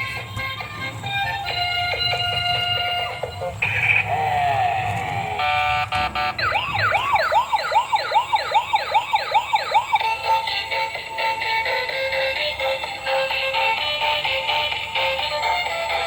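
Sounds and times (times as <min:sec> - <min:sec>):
synthetic toy beeps: 0:01.7 - 0:10.6
fast wailing toy siren: 0:02.8 - 0:10.9.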